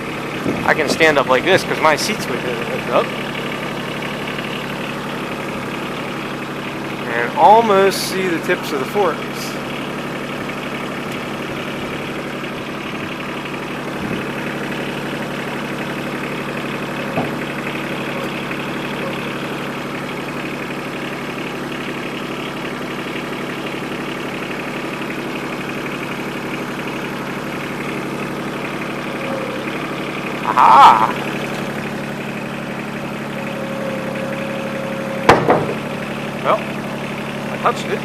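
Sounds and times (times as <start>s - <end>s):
tractor diesel engine running: 0.0s - 38.0s
short knocks: 35.2s - 35.9s.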